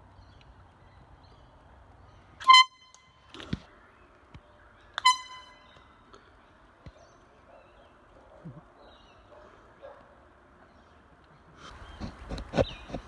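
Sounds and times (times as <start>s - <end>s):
air horn blast: 5.0s - 5.6s.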